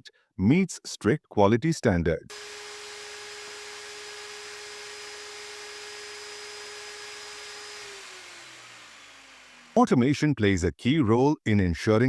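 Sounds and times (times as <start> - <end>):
machine motor whining: 2.3 - 9.8.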